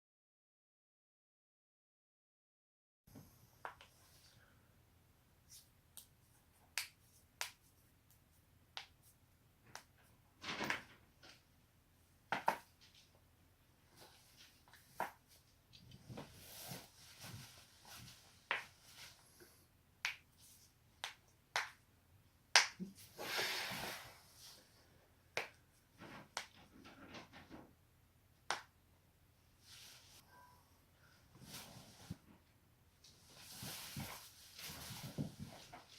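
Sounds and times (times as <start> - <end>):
soft hissing: 23.1 - 24.7.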